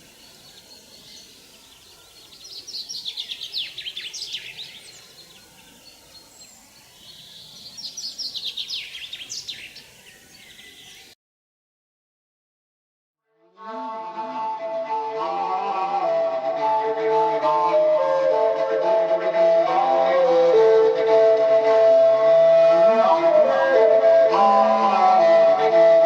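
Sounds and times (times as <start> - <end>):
songbird trilling: 7.1 - 11.1.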